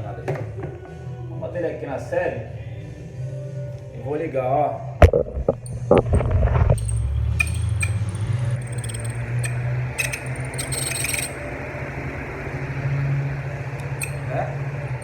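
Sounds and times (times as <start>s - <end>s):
electric fan motor humming: 5.4s - 15.0s
high-pitched squeaking and scraping: 5.7s - 11.4s, 13.9s - 14.5s.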